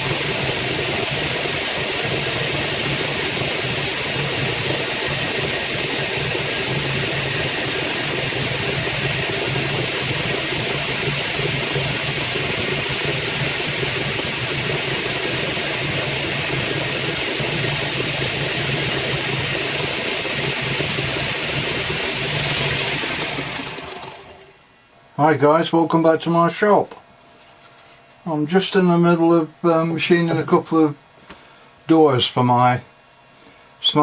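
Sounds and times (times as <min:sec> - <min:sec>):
high-pitched whine: 0:00.0 - 0:24.6
lathe motor hum: 0:00.0 - 0:24.7.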